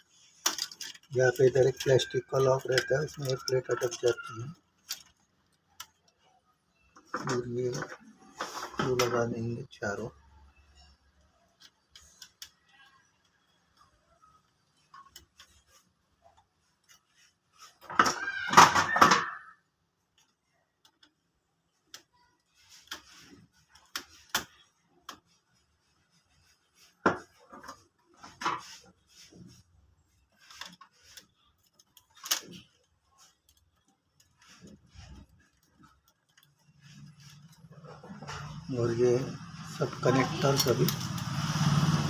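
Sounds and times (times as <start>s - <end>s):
printer parts clicking and tapping: 0.2s - 9.4s, 30.2s - 38.7s.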